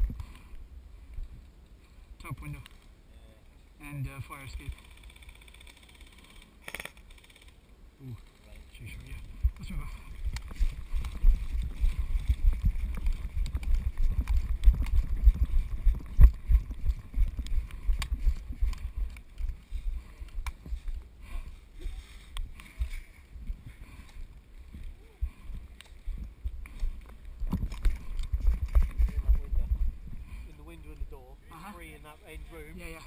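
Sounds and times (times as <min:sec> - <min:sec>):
camera jostling rumble and thumps: 0:08.8 - 0:21.1, 0:21.8 - 0:30.4
faint sharp clicks: 0:20.2 - 0:20.6.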